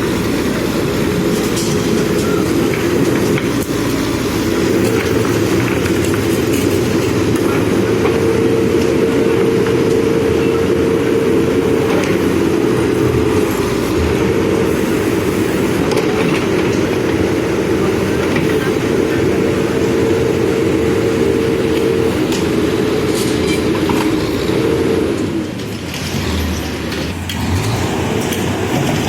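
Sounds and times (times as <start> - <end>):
diesel engine under load: 0.0 - 29.0
engine whine: 0.0 - 29.0.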